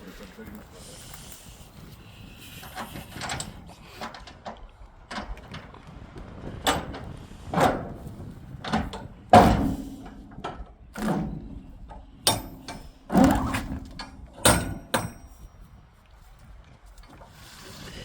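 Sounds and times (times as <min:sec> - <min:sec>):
cargo knocking and scraping: 0:02.7 - 0:15.4
heavy thump: 0:06.7 - 0:15.4.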